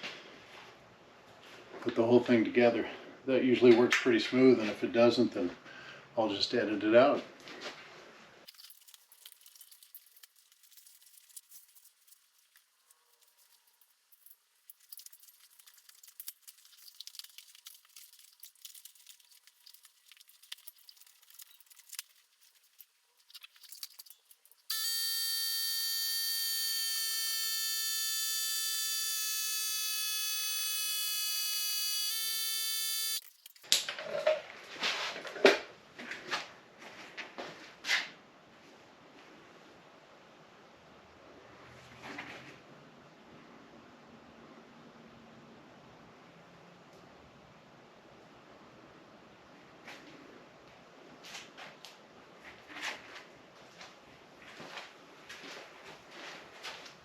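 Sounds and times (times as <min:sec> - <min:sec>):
electric tire inflator motor buzzing: 0:24.7 - 0:33.2.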